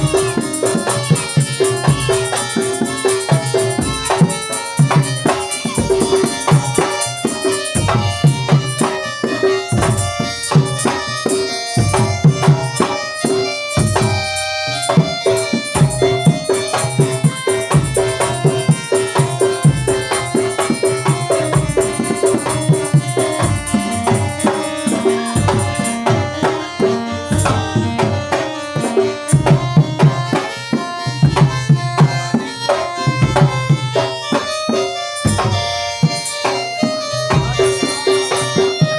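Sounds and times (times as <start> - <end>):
hand drums fast rhythm: 0.0 - 38.9.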